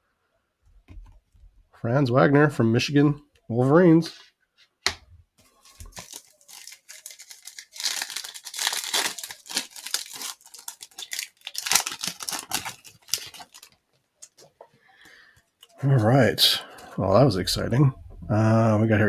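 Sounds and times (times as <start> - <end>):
plastic wrapper crinkling and tearing: 5.5 - 14.5.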